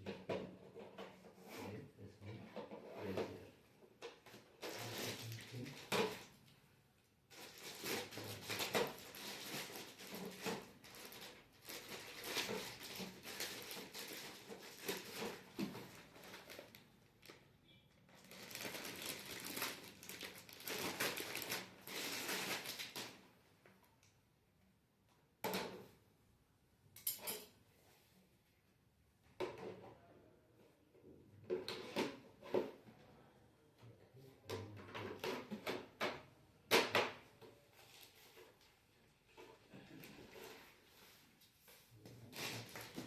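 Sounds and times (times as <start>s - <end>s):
packaging crinkling and rustling: 4.3s - 6.4s, 7.3s - 17.4s, 18.1s - 23.3s, 42.2s - 43.0s.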